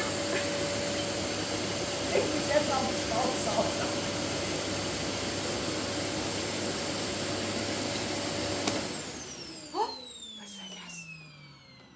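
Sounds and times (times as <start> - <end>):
vacuum cleaner running: 0.0 - 11.9
motor whine spinning down: 8.6 - 11.9.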